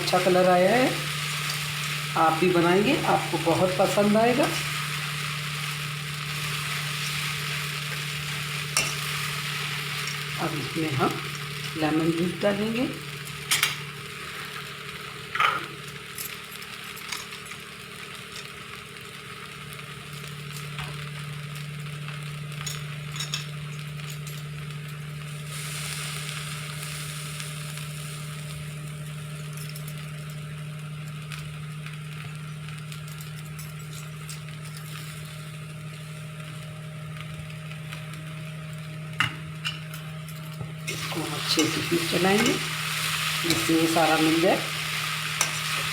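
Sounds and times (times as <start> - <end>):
steady low hum: 0.0 - 18.3
food sizzling in a pan: 0.0 - 45.9.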